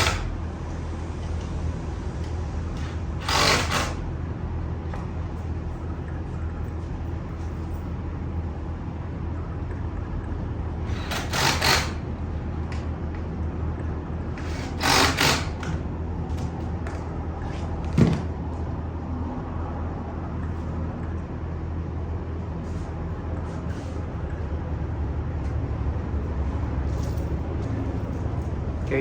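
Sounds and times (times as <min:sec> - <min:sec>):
low machine hum: 0:00.0 - 0:29.0
knock on chair parts: 0:17.8 - 0:18.3.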